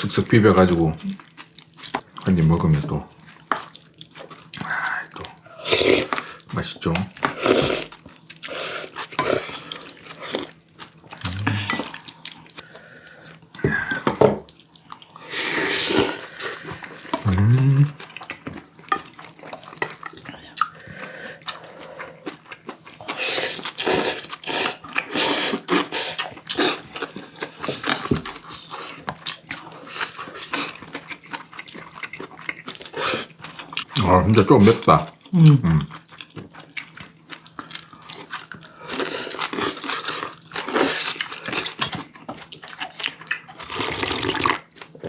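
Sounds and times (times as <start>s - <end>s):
wet eating sounds: 0.2s - 45.0s
person murmuring: 11.2s - 11.8s, 17.2s - 18.0s, 34.7s - 35.9s.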